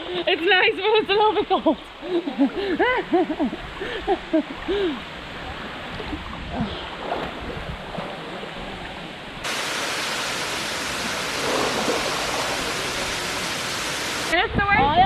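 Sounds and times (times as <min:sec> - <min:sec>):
waterfall rushing: 0:09.4 - 0:14.4.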